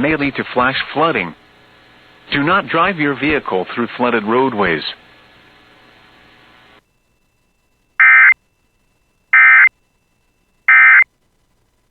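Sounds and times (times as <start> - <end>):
faint radio hiss: 0.0 - 11.9
digital data tone bursts: 8.0 - 8.4, 9.3 - 9.7, 10.7 - 11.0.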